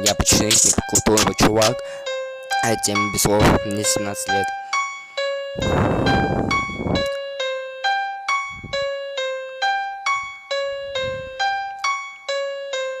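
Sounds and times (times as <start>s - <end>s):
keyboard melody: 0.0s - 13.0s
faint low thumps: 5.6s - 7.1s, 8.6s - 8.9s.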